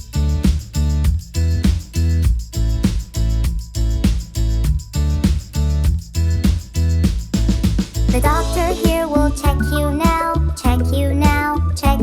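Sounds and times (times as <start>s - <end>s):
instrumental children's song: 8.1s - 12.0s.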